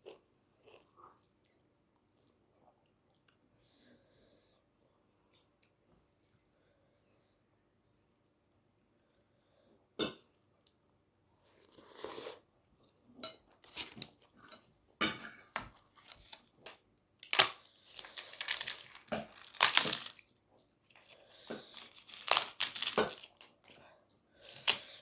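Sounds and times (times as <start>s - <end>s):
crunching and chewing crisps: 15.9s - 25.0s.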